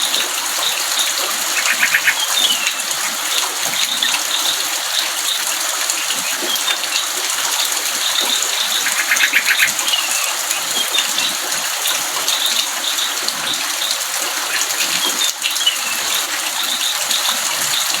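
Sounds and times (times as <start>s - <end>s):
bird chirping and trilling: 0.6s - 7.2s, 8.0s - 11.4s.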